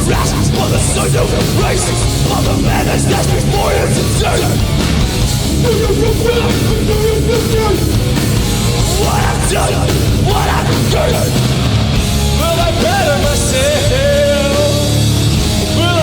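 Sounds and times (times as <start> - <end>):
shouted vocals: 0.0 - 11.7
hardcore punk band playing: 0.0 - 16.0.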